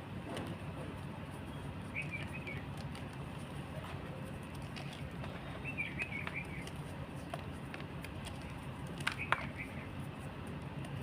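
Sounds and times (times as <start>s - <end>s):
steady low hum: 0.0s - 11.0s
small bird chirping: 1.5s - 2.7s, 5.6s - 6.7s, 9.2s - 9.9s.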